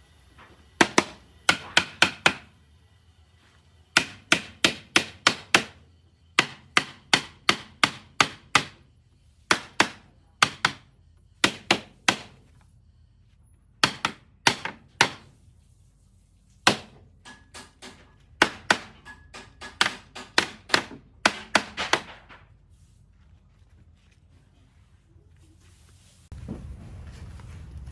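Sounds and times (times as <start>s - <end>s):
hammer striking wood: 0.8s - 2.5s, 3.9s - 5.8s, 6.4s - 8.8s, 9.5s - 12.5s, 13.8s - 15.3s, 16.6s - 22.5s.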